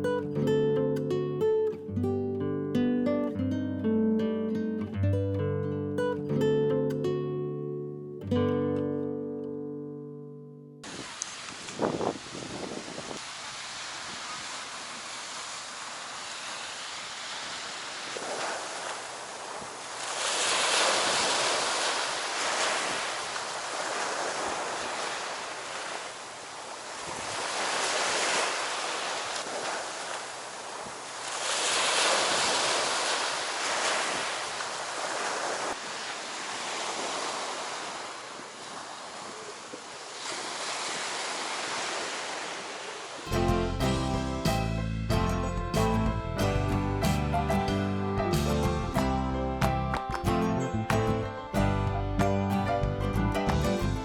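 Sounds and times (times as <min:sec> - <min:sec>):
sea waves breaking on shore: 0:10.8 - 0:44.8.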